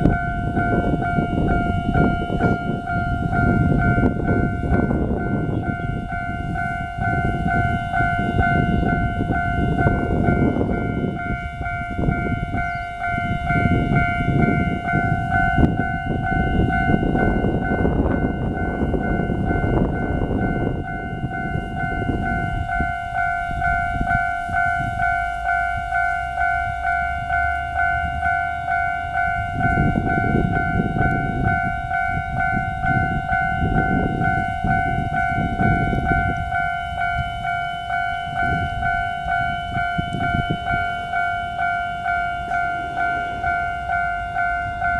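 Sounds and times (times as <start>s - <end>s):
level crossing bell ringing: 0.0s - 44.9s.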